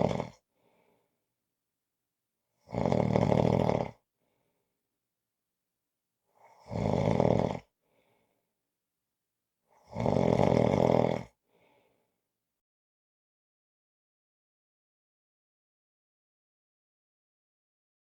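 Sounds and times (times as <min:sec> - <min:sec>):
person snoring: 0:00.0 - 0:00.4, 0:02.7 - 0:04.0, 0:06.5 - 0:07.7, 0:09.8 - 0:11.4
faint soft breath: 0:00.5 - 0:01.2, 0:07.8 - 0:08.5, 0:11.5 - 0:12.2.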